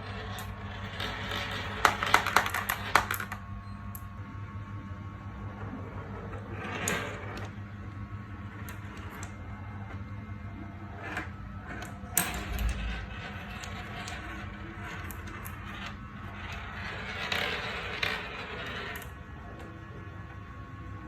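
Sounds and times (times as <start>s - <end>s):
marbles rolling down a track: 0.0s - 3.4s, 6.4s - 7.5s, 11.0s - 19.2s
marble clicks: 0.4s - 4.0s.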